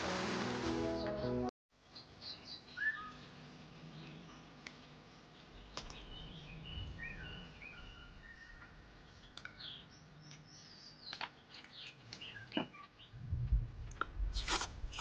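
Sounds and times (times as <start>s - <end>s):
birds chirping: 0.8s - 13.2s
sharp clicks: 5.7s - 6.0s.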